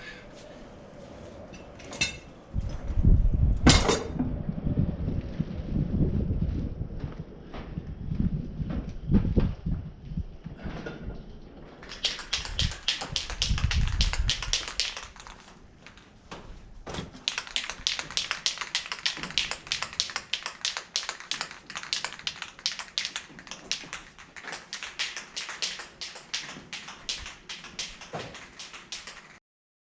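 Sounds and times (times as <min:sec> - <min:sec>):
quick sharp taps: 0:11.8 - 0:16.0, 0:17.2 - 0:29.4.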